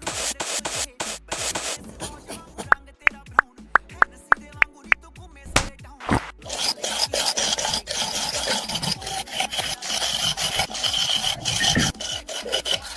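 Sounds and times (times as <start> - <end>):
hand tool rasping: 0.0 - 3.2, 6.0 - 12.9.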